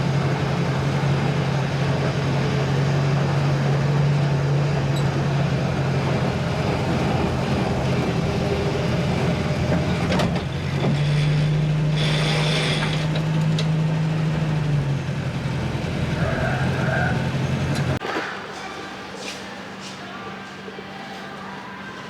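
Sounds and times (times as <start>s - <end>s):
vehicle engine humming: 0.0s - 18.0s.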